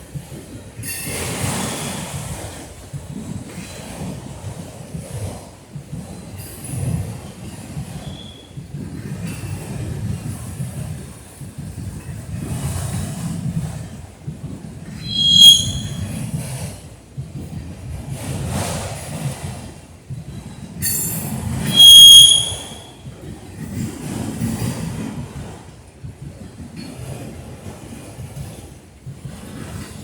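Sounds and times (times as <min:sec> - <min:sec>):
freight train cars rumbling: 0:00.0 - 0:30.0
wheel flanges squealing: 0:15.0 - 0:16.2, 0:20.8 - 0:23.0.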